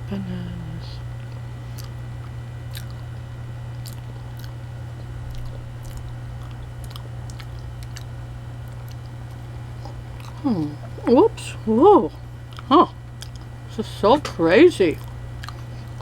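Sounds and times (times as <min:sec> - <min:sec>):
steady low hum: 0:00.0 - 0:16.0
wet mouth clicks: 0:01.2 - 0:03.0, 0:03.7 - 0:04.6, 0:05.2 - 0:11.1, 0:12.5 - 0:13.5
person chewing: 0:01.2 - 0:11.2, 0:12.5 - 0:13.5, 0:15.0 - 0:16.0.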